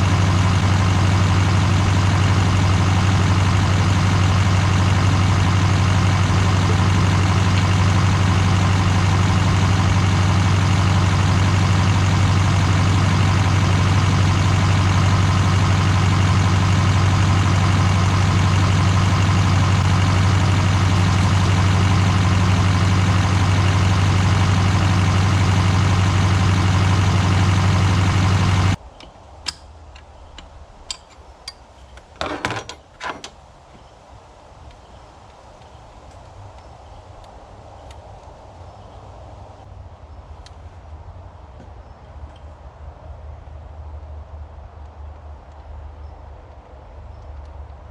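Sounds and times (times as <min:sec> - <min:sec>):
diesel engine idling: 0:00.0 - 0:28.8.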